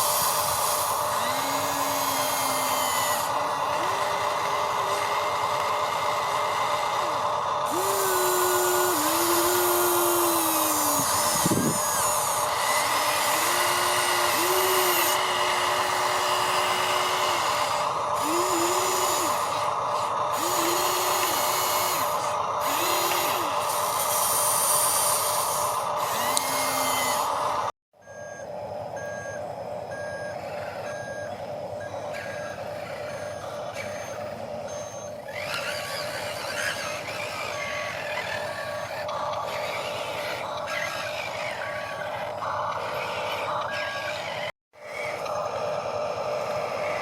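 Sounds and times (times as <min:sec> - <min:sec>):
electric motors whining: 0:00.0 - 0:47.0
simulated engine drone: 0:00.0 - 0:47.0
electronic reversing beeps: 0:28.0 - 0:44.4.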